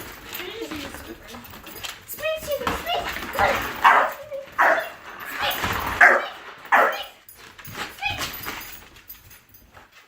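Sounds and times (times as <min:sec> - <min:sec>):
dog barking: 0:03.8 - 0:05.0, 0:06.0 - 0:07.2.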